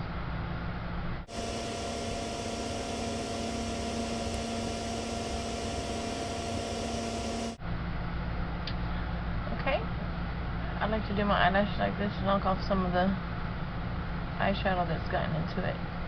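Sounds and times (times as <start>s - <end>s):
electrical hum: 1.0s - 7.6s.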